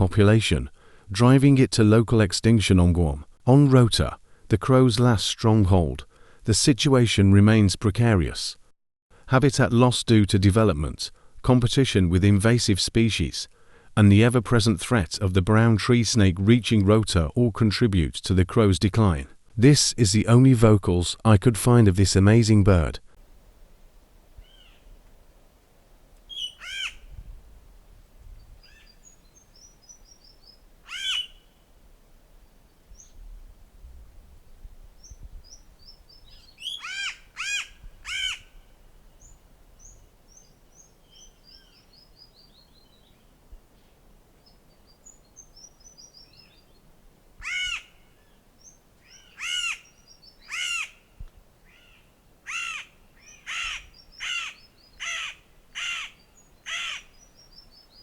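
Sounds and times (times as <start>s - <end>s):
bird chirping: 24.4s - 25.0s, 26.2s - 27.2s, 28.2s - 31.7s, 32.4s - 33.3s, 35.0s - 58.0s
crow cawing: 26.3s - 27.0s, 30.8s - 31.5s, 36.7s - 38.6s, 47.4s - 48.1s, 49.1s - 49.9s, 50.5s - 51.1s, 51.7s - 57.2s.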